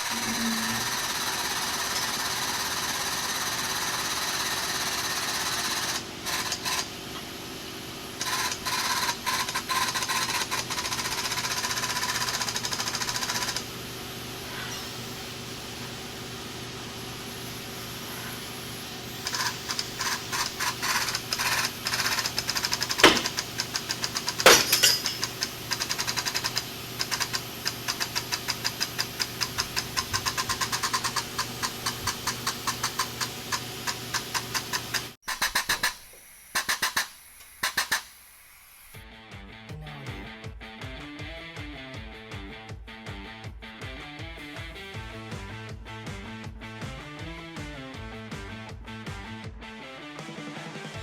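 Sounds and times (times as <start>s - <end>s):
workshop machine hum: 0.0s - 39.0s
fast run of sharp knocks: 21.1s - 25.5s.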